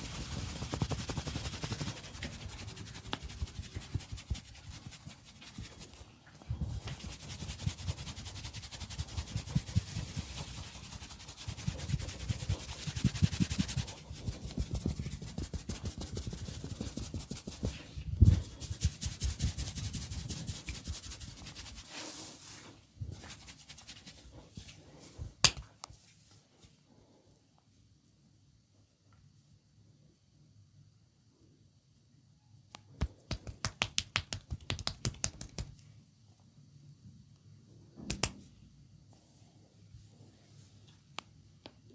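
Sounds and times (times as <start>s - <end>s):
hands rubbing over skin: 0.0s - 24.8s, 33.0s - 35.8s
sharp snap: 38.0s - 38.4s.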